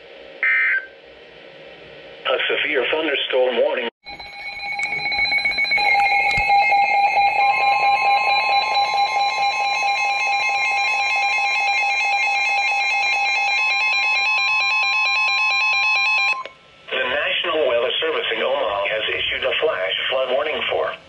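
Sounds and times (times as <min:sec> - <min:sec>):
two-tone alarm signal: 0:00.4 - 0:01.0, 0:04.0 - 0:16.6.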